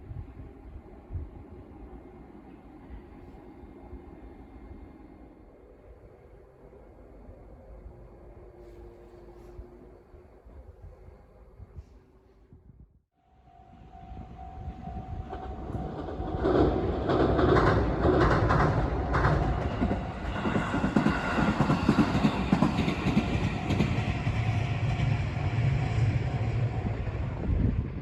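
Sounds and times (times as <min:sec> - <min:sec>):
train rumble and wheel clatter: 0:00.0 - 0:28.0.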